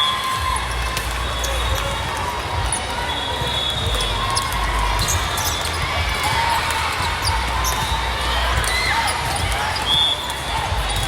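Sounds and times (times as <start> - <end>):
sneakers squeaking on floor: 0.0 - 11.0
volleyballs bouncing on court: 0.0 - 11.0.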